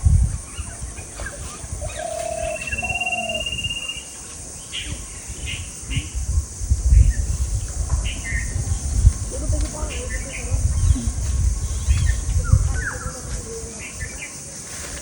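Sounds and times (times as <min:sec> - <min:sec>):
long high bird trill: 0:01.8 - 0:04.2.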